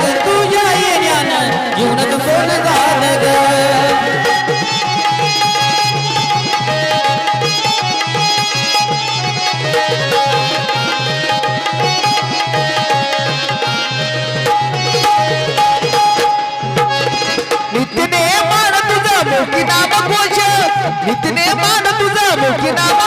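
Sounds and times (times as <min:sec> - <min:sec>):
hand drum rhythm: 0:00.0 - 0:18.2
held melody line: 0:00.0 - 0:23.0.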